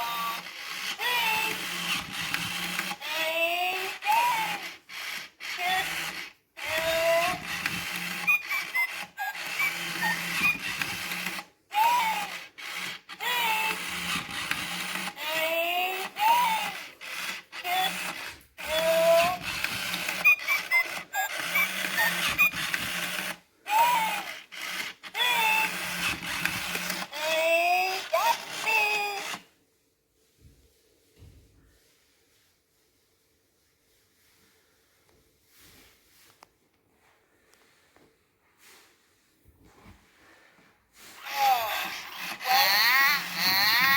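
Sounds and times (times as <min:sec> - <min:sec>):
toy motors whirring: 0:00.0 - 0:29.5, 0:41.2 - 0:43.9
toys chattering electronic voices: 0:05.5 - 0:29.4, 0:41.2 - 0:43.9.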